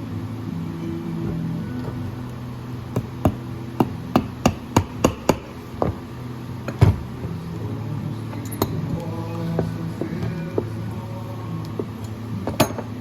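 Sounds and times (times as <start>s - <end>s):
hammer tapping leather: 3.0s - 6.0s.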